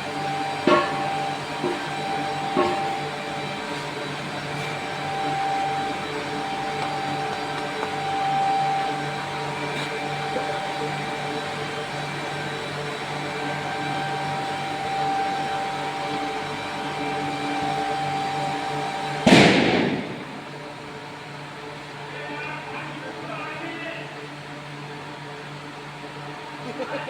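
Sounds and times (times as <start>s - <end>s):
industrial machinery humming: 0.0s - 27.0s
machine whine: 0.0s - 27.0s
sudden loud burst of noise: 19.2s - 20.8s.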